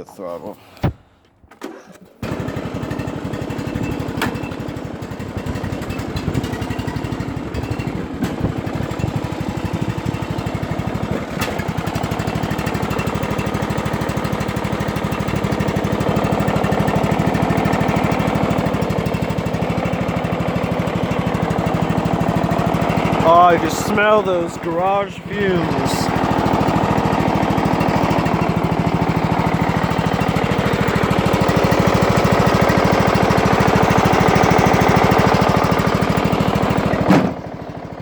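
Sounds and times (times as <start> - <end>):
lawn mower engine putter: 0.8 - 38.0.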